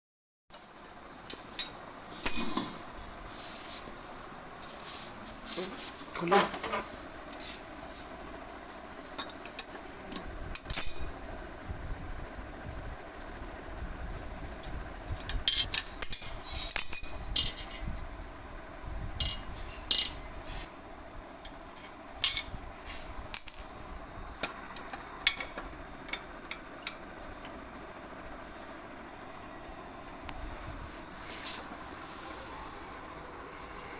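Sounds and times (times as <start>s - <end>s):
metal tools clinking on tap: 23.4s - 23.8s.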